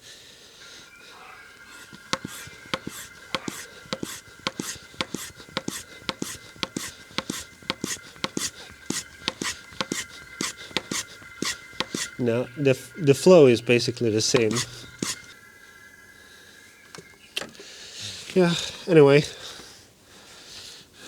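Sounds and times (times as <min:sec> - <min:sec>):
hand pump clicking: 0:01.8 - 0:15.3.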